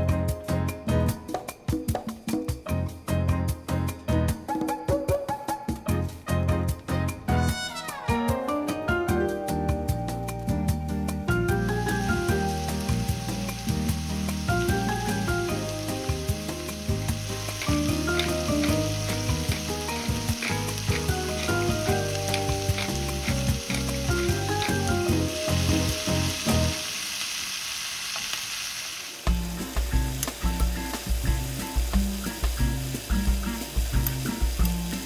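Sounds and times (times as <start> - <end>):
background music with beat: 0.0 - 26.8, 29.2 - 35.0
food sizzling in a pan: 10.3 - 35.0.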